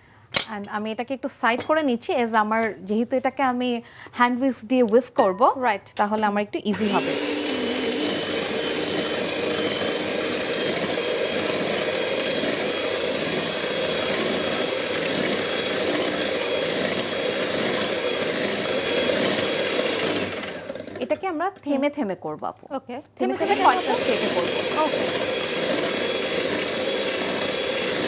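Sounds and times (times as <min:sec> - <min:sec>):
electric hand mixer whipping cream: 0:06.7 - 0:21.2, 0:23.2 - 0:28.0.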